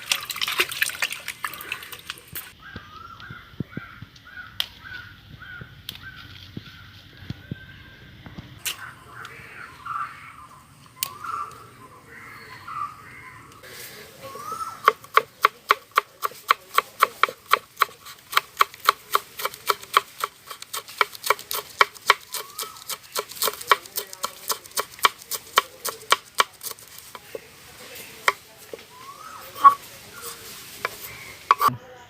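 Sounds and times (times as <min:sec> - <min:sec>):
knife chopping on cutting board: 0:14.9 - 0:26.8.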